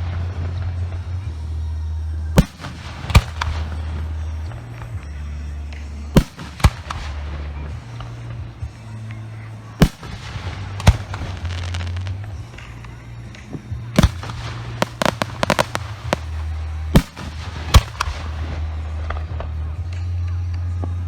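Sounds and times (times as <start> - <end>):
fireworks booming: 2.4 - 4.1, 6.2 - 8.0, 9.8 - 12.7, 14.0 - 18.6
crackling fireworks reports: 2.4 - 20.2.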